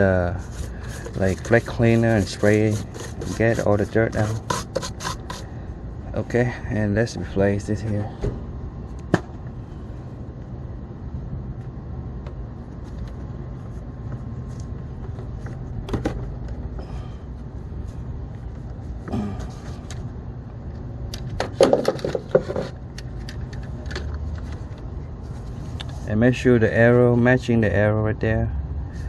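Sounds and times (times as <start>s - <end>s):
steady low rumble: 5.2s - 21.6s
clicks and knocks of engine parts: 14.1s - 16.9s, 20.7s - 24.9s.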